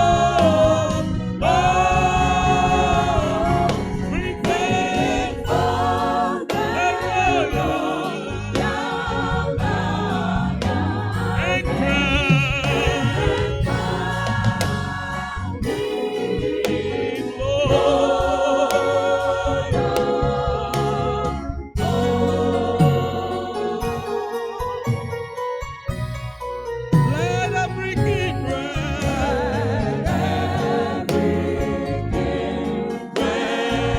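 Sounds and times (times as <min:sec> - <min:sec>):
choir singing a hymn: 0:00.0 - 0:24.6, 0:27.8 - 0:33.9
instrumental accompaniment: 0:00.0 - 0:33.9.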